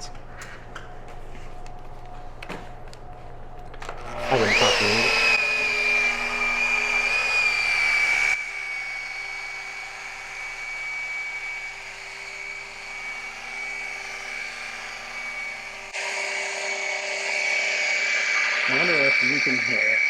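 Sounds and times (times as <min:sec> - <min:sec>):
rotary polisher motor whining: 0:03.7 - 0:20.0.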